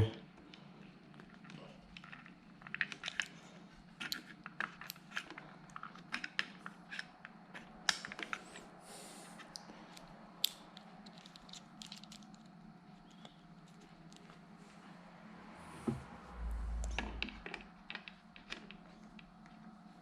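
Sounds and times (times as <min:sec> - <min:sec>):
low steady hum: 0:00.0 - 0:20.0.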